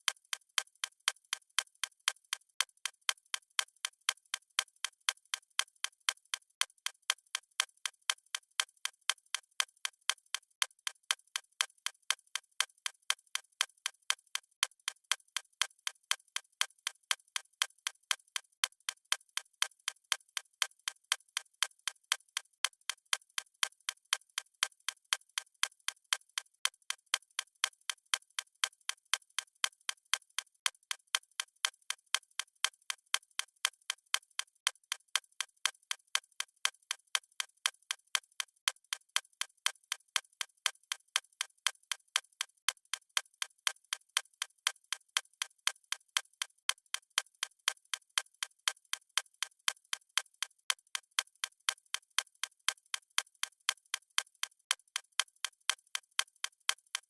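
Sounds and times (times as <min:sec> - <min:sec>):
watch ticking: 0:22.3 - 0:57.0.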